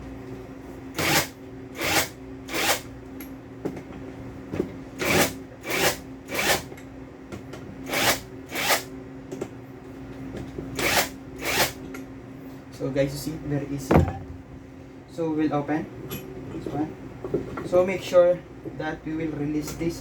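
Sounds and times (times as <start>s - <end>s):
steady low hum: 11.2s - 17.4s.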